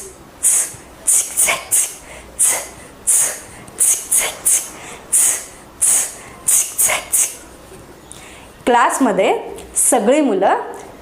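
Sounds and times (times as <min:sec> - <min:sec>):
short sharp hissing strokes: 0:00.4 - 0:07.4.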